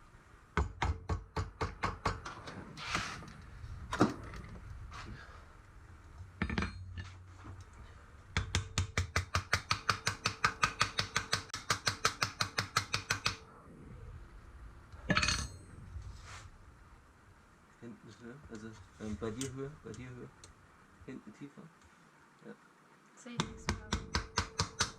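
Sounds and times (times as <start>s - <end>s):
hammer tapping on rivet: 8.4s - 13.4s, 23.4s - 24.9s.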